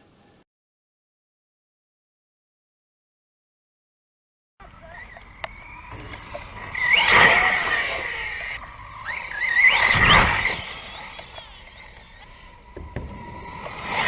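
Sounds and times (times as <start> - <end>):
rc truck electric motor whining: 4.6 - 14.0.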